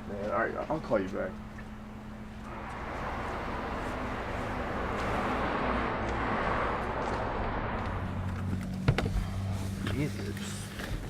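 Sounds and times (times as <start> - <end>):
car engine and road rushing: 2.3 - 11.0.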